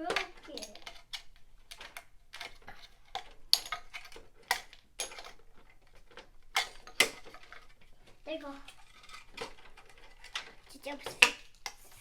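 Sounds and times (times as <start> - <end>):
plastic toy parts clicking: 0.0 - 12.0.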